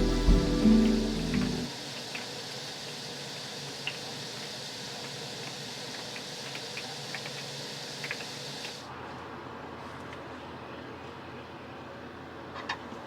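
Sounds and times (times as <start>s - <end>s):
background music: 0.0s - 1.7s
steady hiss: 0.0s - 8.9s.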